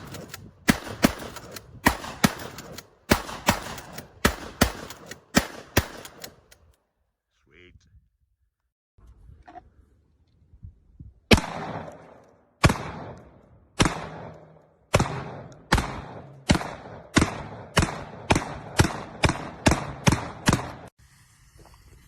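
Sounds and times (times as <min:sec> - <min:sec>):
gunshots with echo: 0:00.0 - 0:06.4, 0:11.3 - 0:20.9.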